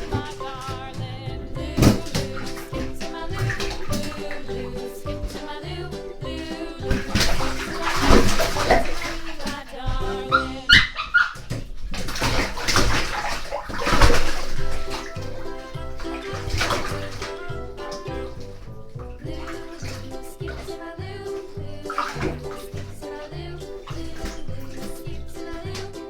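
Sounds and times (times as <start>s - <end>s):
background music: 0.0s - 10.9s, 13.8s - 26.0s
dog splashing in bath water: 0.0s - 26.0s.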